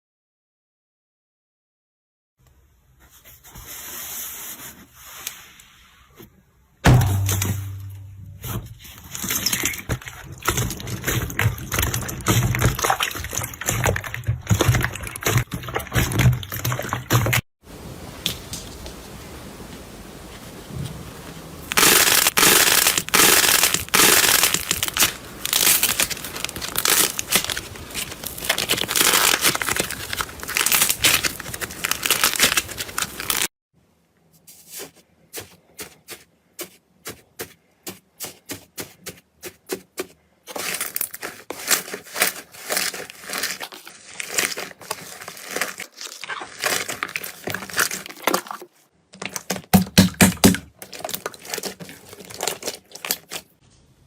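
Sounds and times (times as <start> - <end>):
slime crackling and popping: 21.7 - 33.5, 40.6 - 48.6, 49.4 - 53.5.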